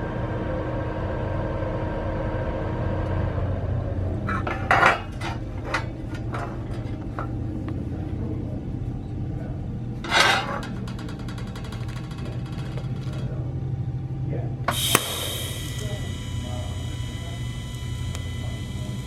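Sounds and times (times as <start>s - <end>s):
steady low hum: 13.7s - 19.0s.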